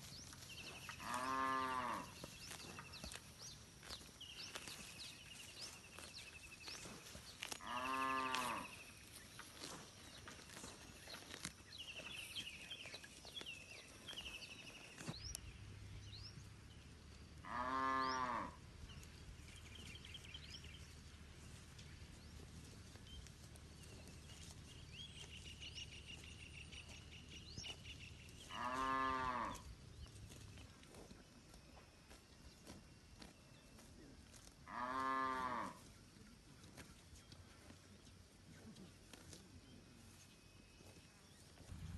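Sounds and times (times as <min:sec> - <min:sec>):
small birds chirping: 0:00.0 - 0:41.9
cattle mooing: 0:01.0 - 0:02.2, 0:07.6 - 0:08.8, 0:17.4 - 0:18.6, 0:28.5 - 0:29.6, 0:34.7 - 0:35.8.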